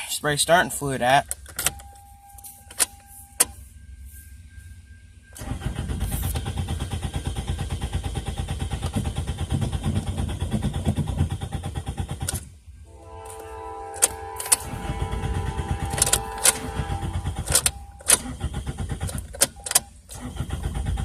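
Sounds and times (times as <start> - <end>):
starter cranking car engine: 5.3 - 12.6, 14.0 - 21.0.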